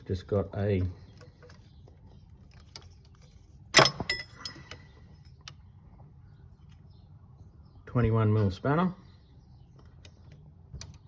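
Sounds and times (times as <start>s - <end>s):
spanner clinking on metal: 3.8s - 4.8s.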